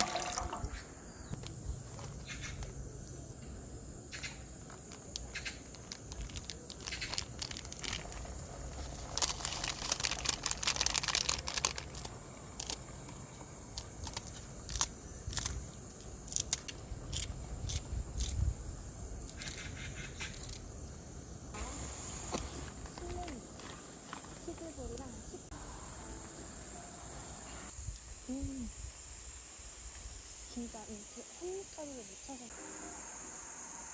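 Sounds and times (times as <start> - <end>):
crinkling and rustling: 4.5 - 15.6, 21.6 - 25.2.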